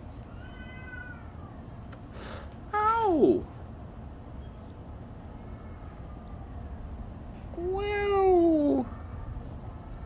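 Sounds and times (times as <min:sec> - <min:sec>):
cat yowling: 0:00.3 - 0:01.6, 0:07.6 - 0:09.0.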